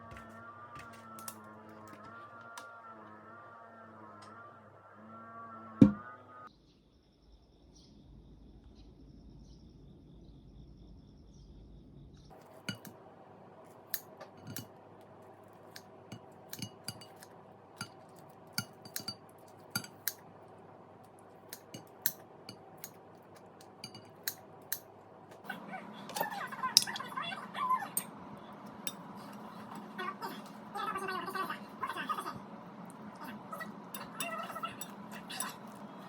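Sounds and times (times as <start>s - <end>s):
faint steady hum: 0.0s - 36.0s
dishes and cutlery clinking: 12.5s - 12.9s, 14.3s - 14.7s, 15.7s - 20.2s, 21.5s - 23.0s, 23.6s - 24.4s, 26.1s - 27.2s, 33.9s - 36.0s.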